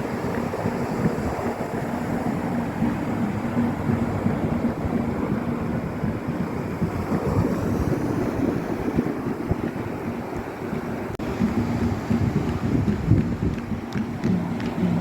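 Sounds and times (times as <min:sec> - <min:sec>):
surf rushing: 0:00.0 - 0:15.0
wind buffeting microphone: 0:00.0 - 0:15.0.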